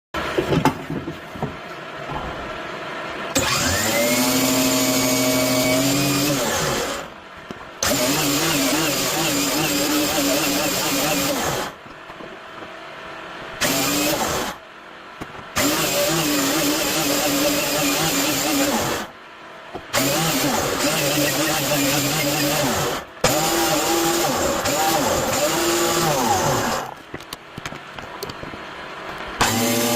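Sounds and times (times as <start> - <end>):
electric power tool motor whine: 3.3 - 7.1, 7.8 - 11.8, 13.6 - 14.6, 15.6 - 19.1, 19.9 - 27.0, 29.4 - 29.9.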